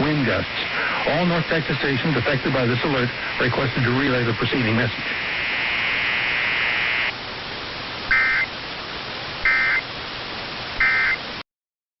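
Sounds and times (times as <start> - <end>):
radio broadcast hiss: 0.0 - 11.4
buzzy data bursts: 8.1 - 8.5, 9.4 - 9.8.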